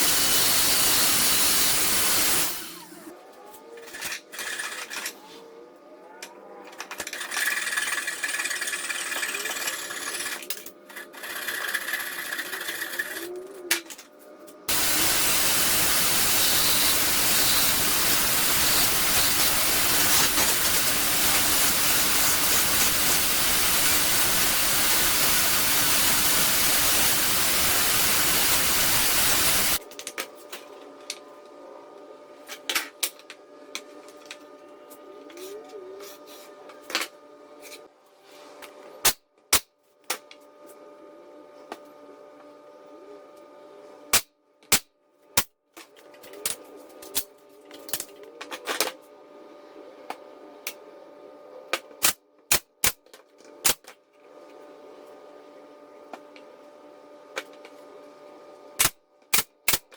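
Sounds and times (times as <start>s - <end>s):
power tool running: 0.0s - 3.1s, 14.7s - 29.8s.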